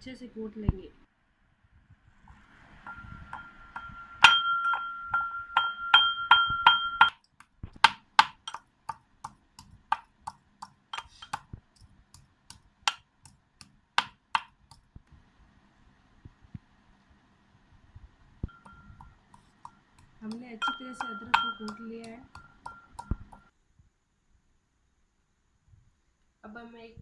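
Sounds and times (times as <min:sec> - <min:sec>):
pestle striking in a mortar: 0:02.8 - 0:14.8, 0:18.5 - 0:23.5.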